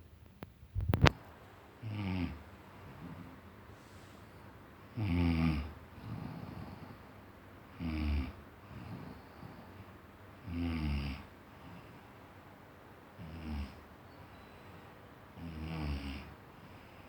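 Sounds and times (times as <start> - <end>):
quiet breathing: 1.8 - 17.0
deep snoring: 15.4 - 16.4.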